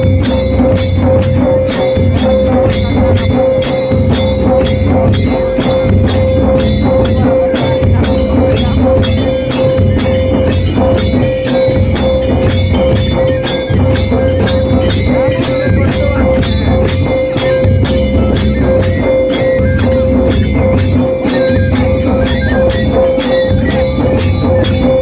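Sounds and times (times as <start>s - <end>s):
drums beaten in fast rhythm: 0.0s - 25.0s
metallic jingling: 0.0s - 25.0s.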